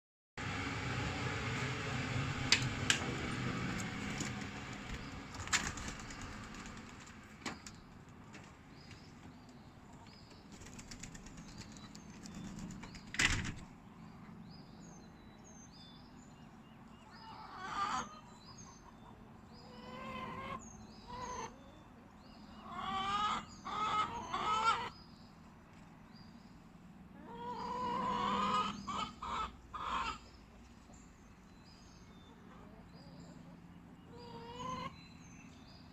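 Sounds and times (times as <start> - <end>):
birds calling: 13.9 - 25.4, 26.2 - 35.9.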